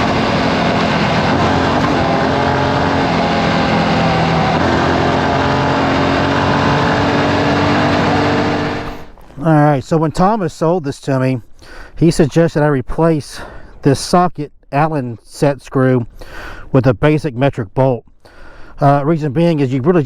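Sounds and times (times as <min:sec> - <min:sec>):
motorcycle engine running: 0:00.0 - 0:09.2.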